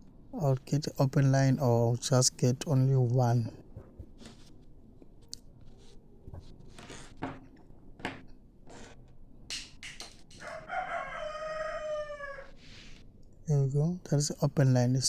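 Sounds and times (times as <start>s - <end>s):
rooster crowing: 10.4s - 12.9s.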